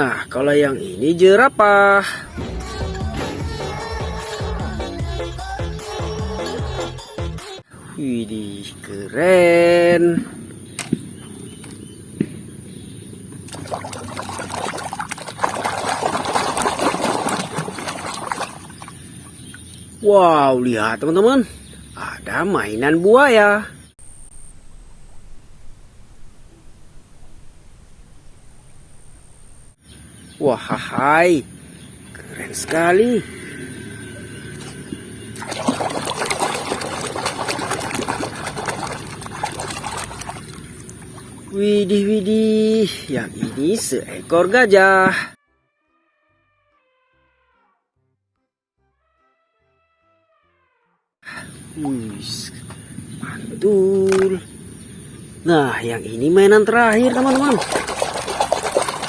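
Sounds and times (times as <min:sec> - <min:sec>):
water pouring and splashing: 0:13.5 - 0:19.6, 0:34.6 - 0:41.6, 0:56.8 - 0:59.0.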